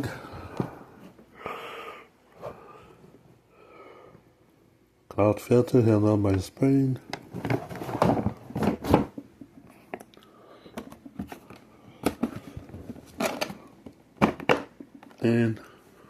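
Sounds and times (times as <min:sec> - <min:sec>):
plastic parts knocking and clicking: 0:10.7 - 0:15.2.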